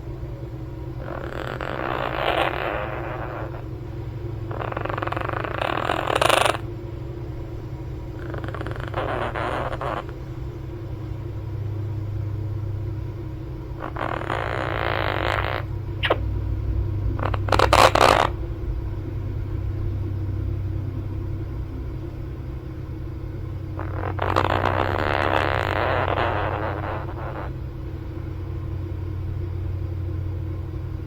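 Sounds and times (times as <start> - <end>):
steady low hum: 0.0 - 31.0
parrot snoring: 1.0 - 3.8, 4.4 - 6.7, 8.1 - 10.2, 13.7 - 18.5, 23.8 - 27.6
short scratchy noise: 13.9 - 18.6.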